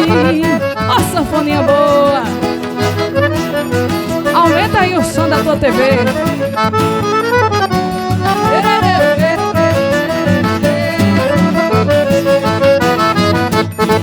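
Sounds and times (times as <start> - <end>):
accordion melody: 0.0 - 14.0
band with bass and beat: 2.7 - 13.3.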